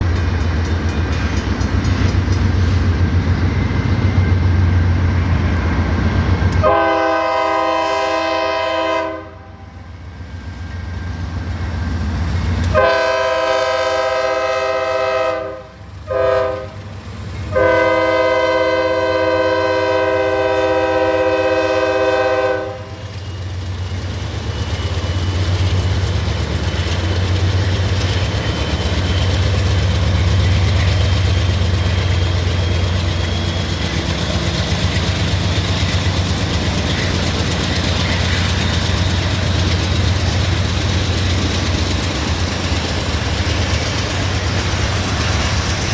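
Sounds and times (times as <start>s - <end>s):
locomotive and train rumble: 0.0s - 45.9s
train air horn: 6.6s - 9.8s, 12.7s - 16.9s, 17.5s - 23.0s.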